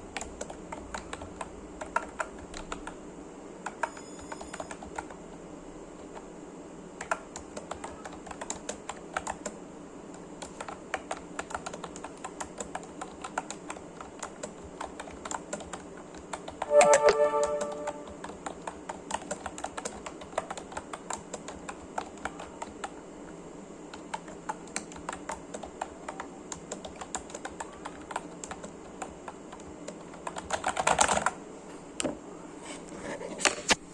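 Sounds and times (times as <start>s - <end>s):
keyboard typing: 0.1s - 3.0s, 3.6s - 5.2s, 7.0s - 22.9s, 23.9s - 31.4s
brief loud pitched sound: 16.7s - 18.2s.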